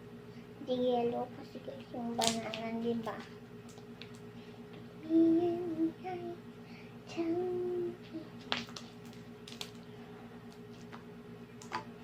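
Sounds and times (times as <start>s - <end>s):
low background hum: 0.0s - 12.0s
child singing: 7.1s - 8.3s.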